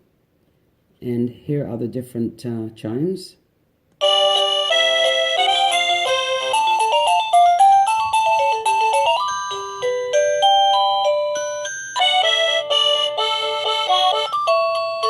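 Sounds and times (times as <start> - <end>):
doorbell chime melodies: 4.0 - 15.0.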